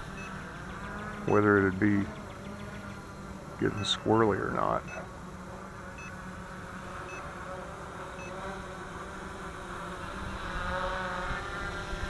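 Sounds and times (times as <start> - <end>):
drone propellers buzzing: 0.0 - 12.0
faint high beeps: 0.2 - 0.4, 4.8 - 5.1.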